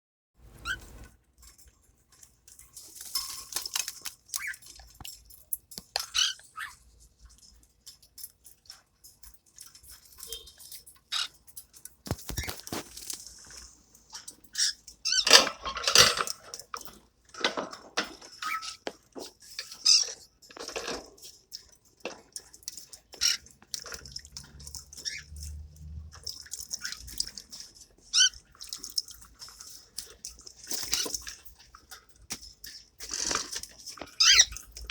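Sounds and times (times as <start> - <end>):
water splashing and dripping: 16.3 - 34.9.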